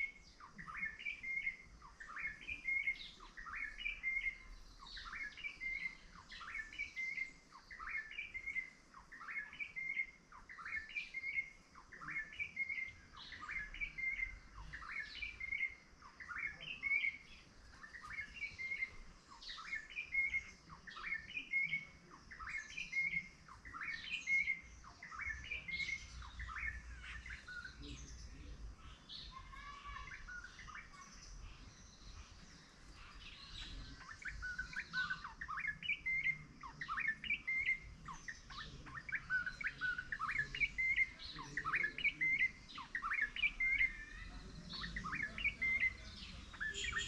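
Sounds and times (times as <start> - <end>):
faint high bird calls: 0.0 - 47.0
small birds chirping: 0.0 - 47.0.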